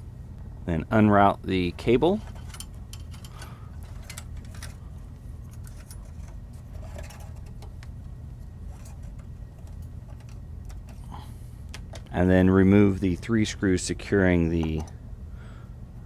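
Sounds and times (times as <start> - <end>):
steady low hum: 0.0 - 16.0
cable clicks and rattles: 1.8 - 12.2, 14.0 - 15.0.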